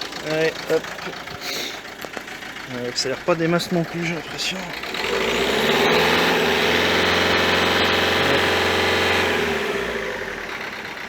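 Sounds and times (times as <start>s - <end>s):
diesel engine revving and idling: 0.0s - 11.0s.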